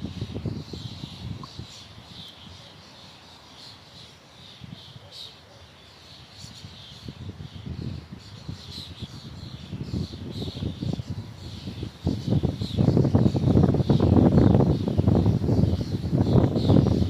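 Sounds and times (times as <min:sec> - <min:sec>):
gusting wind rumble: 0:00.0 - 0:02.1, 0:06.7 - 0:17.0
small birds chirping: 0:00.0 - 0:17.0.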